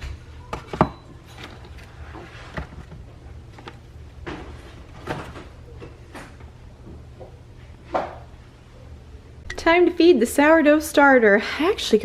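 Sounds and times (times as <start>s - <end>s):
handling knocks and clatters: 0.6s - 6.4s
steady low hum: 1.1s - 12.0s.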